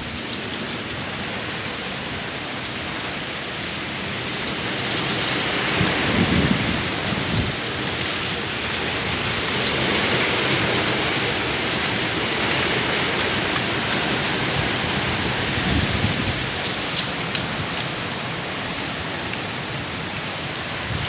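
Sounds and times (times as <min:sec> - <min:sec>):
wind gusting against microphone: 0:00.0 - 0:21.0
strong wind rushing: 0:04.5 - 0:19.1, 0:19.7 - 0:21.0.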